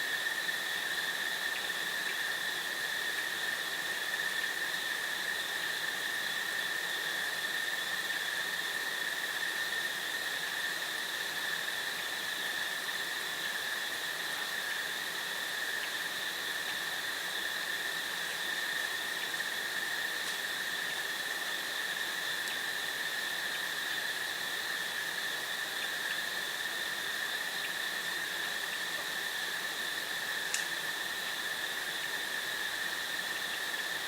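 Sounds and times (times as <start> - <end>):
crickets chirping: 0.0 - 34.0
faint ticks: 30.4 - 30.8.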